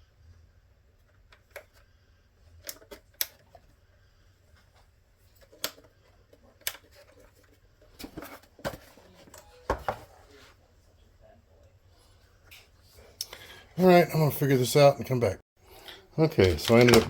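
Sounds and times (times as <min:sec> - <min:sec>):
plastic parts clicking and tapping: 0:02.6 - 0:03.7, 0:05.4 - 0:09.8, 0:16.4 - 0:17.0.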